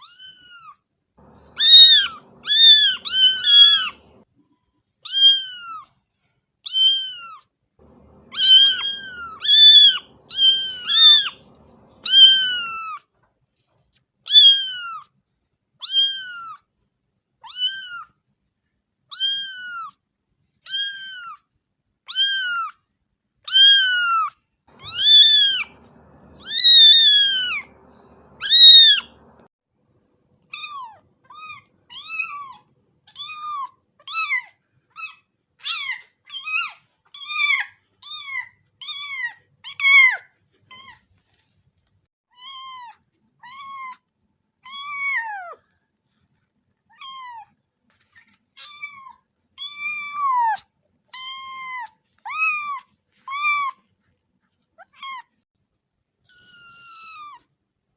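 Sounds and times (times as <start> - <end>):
cat meowing: 0.0 - 4.2, 5.0 - 5.8, 6.7 - 13.0, 14.3 - 15.0, 15.8 - 16.6, 17.4 - 18.1, 19.1 - 19.9, 20.7 - 21.4, 22.1 - 22.8, 23.5 - 29.5, 30.5 - 40.2, 44.6 - 45.6, 48.6 - 50.6, 56.3 - 57.4.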